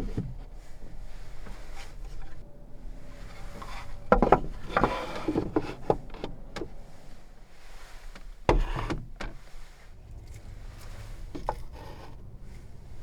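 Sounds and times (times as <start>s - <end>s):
rubbing: 3.1s - 13.0s
wooden knocks and clatters: 3.4s - 6.9s, 8.1s - 9.4s.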